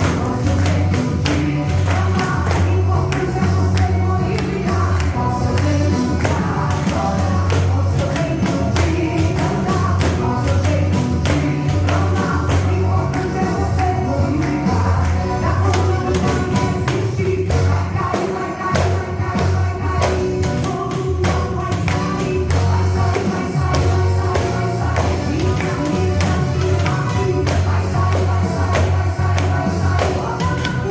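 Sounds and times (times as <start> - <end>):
gospel music with strong bass: 0.0 - 30.9
tambourine jingles in quick rhythm: 0.0 - 30.9.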